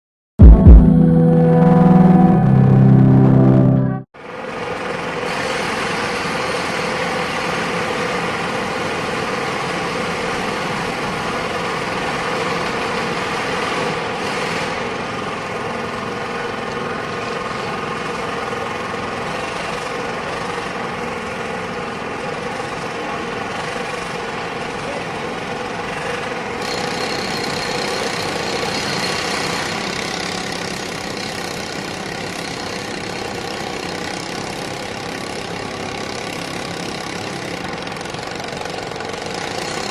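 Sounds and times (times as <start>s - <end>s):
loud machinery engine running: 0.4s - 39.9s.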